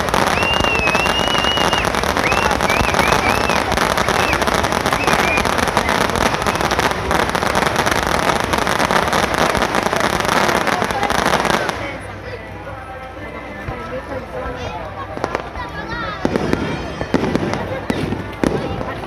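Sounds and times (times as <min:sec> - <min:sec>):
fireworks hissing and crackling: 0:00.0 - 0:12.6, 0:13.6 - 0:19.0
thin wavering whistle: 0:00.2 - 0:06.0.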